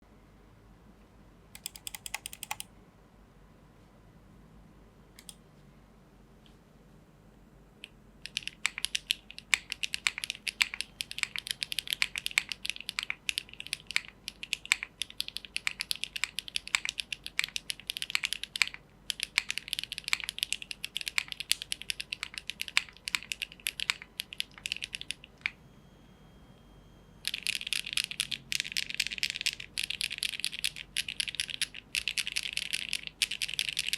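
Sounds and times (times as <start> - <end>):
typing on mechanical keyboard: 1.6 - 2.7, 8.2 - 25.6, 27.2 - 33.9.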